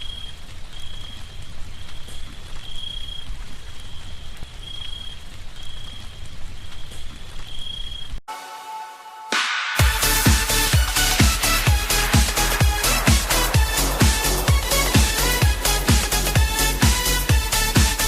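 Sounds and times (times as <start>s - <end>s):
light rain falling: 0.0s - 8.2s
humming sound: 9.8s - 18.0s.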